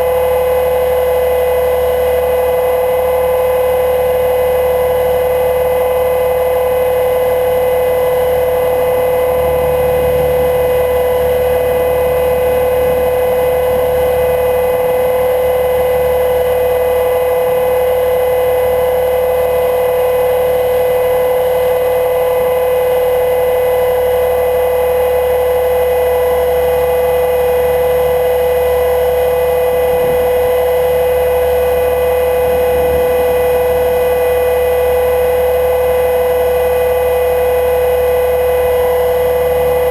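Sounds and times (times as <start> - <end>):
rc helicopter motor whine: 0.0 - 39.9.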